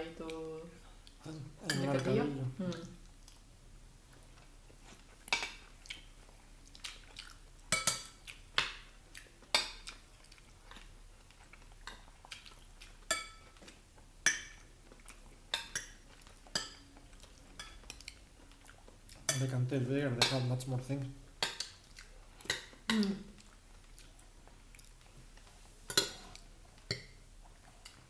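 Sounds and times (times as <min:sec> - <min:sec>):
cutlery clinking on plates: 0:01.6 - 0:02.2, 0:05.3 - 0:05.7, 0:07.7 - 0:08.8, 0:13.1 - 0:14.7, 0:15.5 - 0:18.1, 0:21.4 - 0:21.8, 0:22.4 - 0:23.2, 0:25.9 - 0:27.2.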